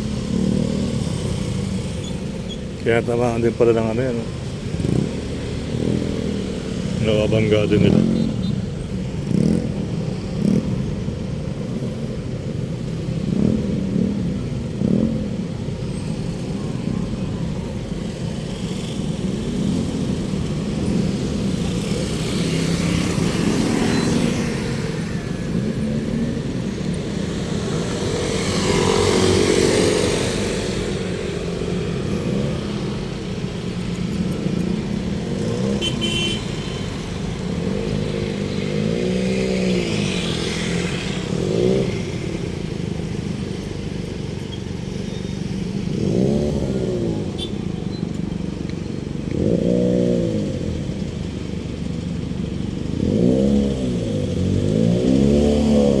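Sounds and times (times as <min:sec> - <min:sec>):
cars passing: 0:00.0 - 0:56.0
motorcycles passing: 0:00.0 - 0:56.0.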